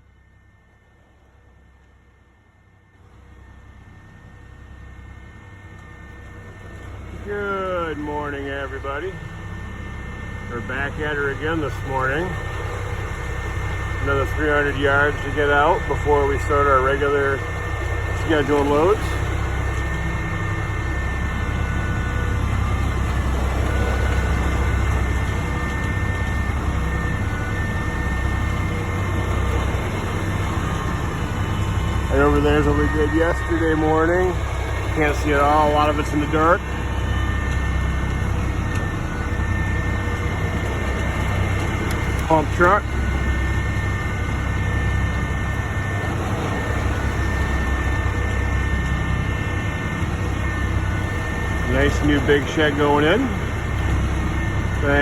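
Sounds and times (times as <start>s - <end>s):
diesel truck engine rumble: 0.0s - 55.0s
faint whine: 0.0s - 55.0s.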